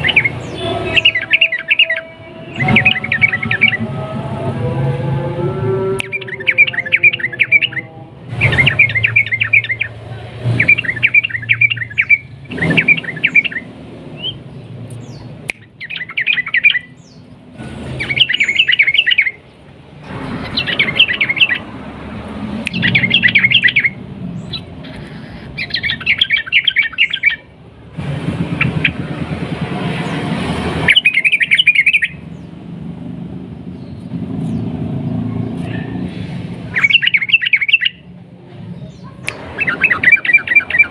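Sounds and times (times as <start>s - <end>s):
bird singing bubbly phrases: 0.0s - 4.0s, 6.0s - 10.0s, 10.6s - 17.3s, 18.0s - 19.5s, 20.4s - 21.7s, 22.7s - 27.5s, 30.9s - 32.3s, 36.7s - 38.0s, 39.6s - 40.9s.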